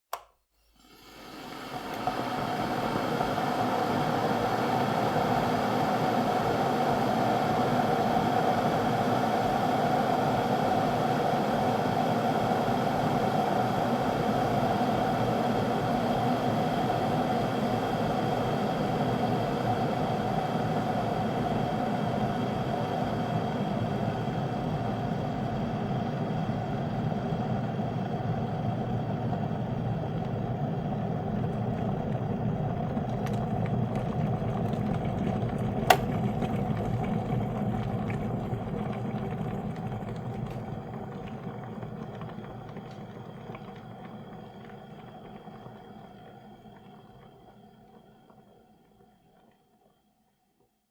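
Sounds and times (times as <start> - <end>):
electric kettle boiling water: 0.1 - 50.4.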